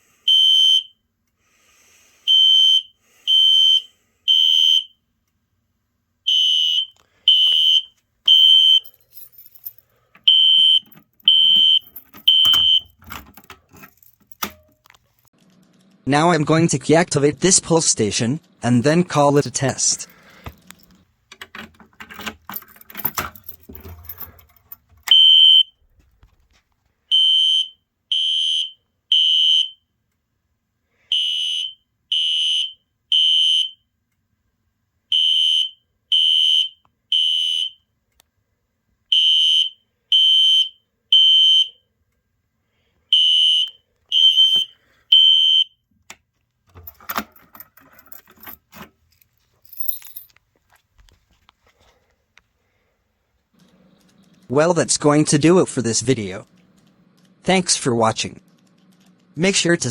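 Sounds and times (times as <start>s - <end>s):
high-pitched fire alarm horn: 2.3s - 5.0s, 6.3s - 8.9s, 10.3s - 13.0s, 27.1s - 29.8s, 31.1s - 33.8s, 35.1s - 37.8s, 39.1s - 41.8s, 43.1s - 45.8s
handling noise: 8.2s - 16.0s, 20.0s - 25.2s, 46.6s - 52.1s
key clicks: 58.3s - 59.5s.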